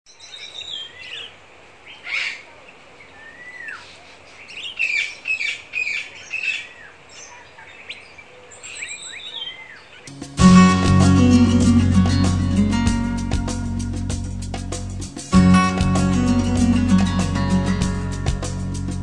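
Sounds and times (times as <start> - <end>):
birds chirping: 0.1 - 14.0
faint hiss: 10.1 - 19.0
loud guitar music: 10.1 - 19.0.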